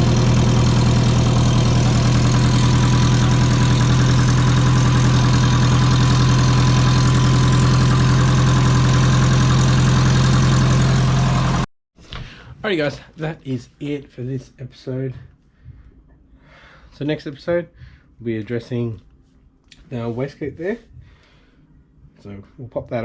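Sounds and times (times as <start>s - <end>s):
car engine idling: 0.0s - 11.7s.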